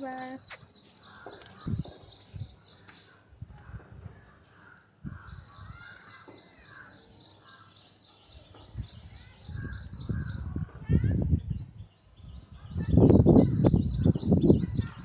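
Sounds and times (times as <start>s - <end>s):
lower bird calls: 4.6s - 10.8s.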